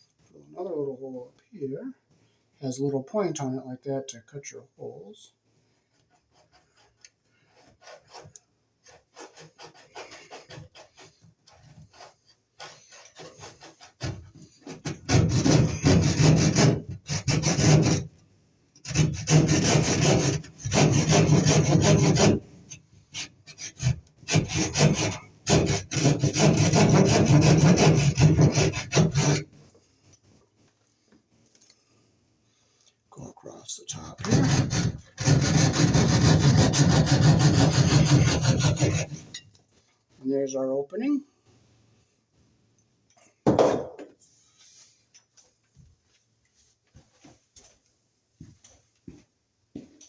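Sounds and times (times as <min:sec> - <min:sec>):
saw cutting through wall: 0:06.1 - 0:18.1, 0:18.8 - 0:29.6, 0:33.9 - 0:39.4.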